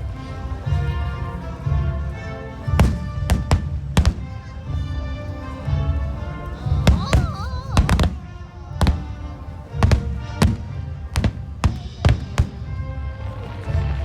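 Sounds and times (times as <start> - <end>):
music with sustained tones: 0.0 - 14.0
fireworks bangs: 2.7 - 4.4, 6.6 - 9.1, 9.8 - 13.6.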